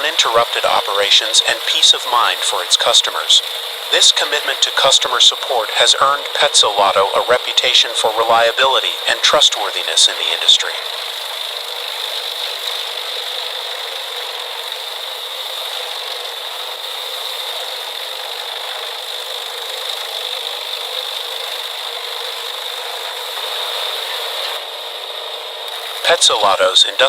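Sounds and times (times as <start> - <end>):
wood chipper running: 3.1 - 7.5, 10.6 - 26.6.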